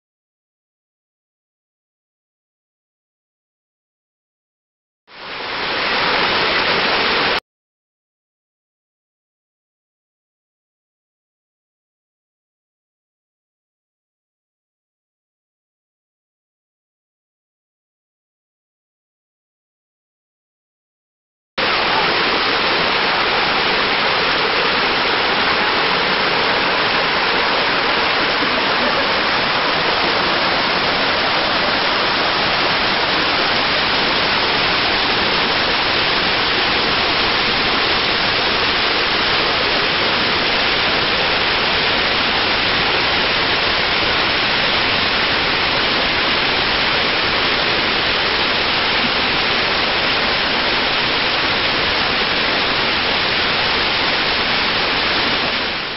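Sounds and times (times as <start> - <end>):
waterfall pouring: 21.6 - 55.8.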